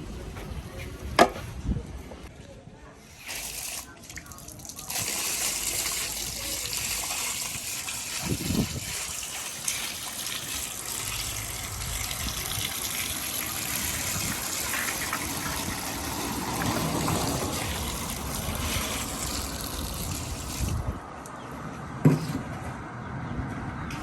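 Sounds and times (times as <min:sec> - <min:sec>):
water gushing onto a mat: 0:03.2 - 0:20.9.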